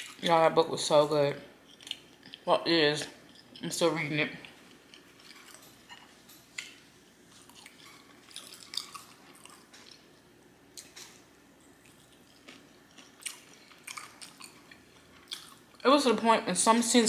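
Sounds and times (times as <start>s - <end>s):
person chewing food: 1.6s - 2.5s, 3.2s - 3.7s, 4.4s - 15.8s.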